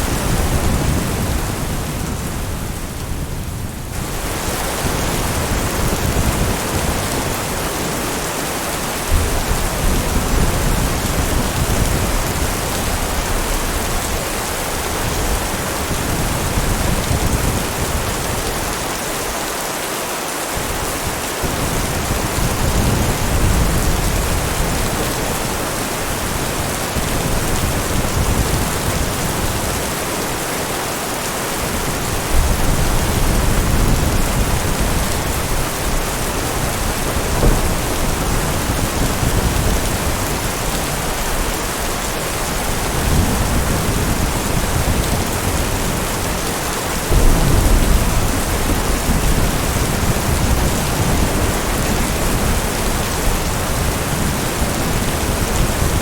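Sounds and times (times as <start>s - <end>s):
heavy rain: 0.0s - 56.0s
low thunder rumbling: 31.7s - 56.0s.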